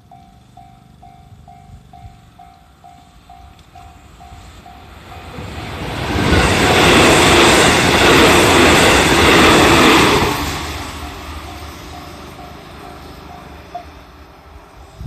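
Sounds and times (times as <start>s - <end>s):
crossing warning bell dinging: 0.0s - 14.8s
electric train passing: 0.0s - 15.0s.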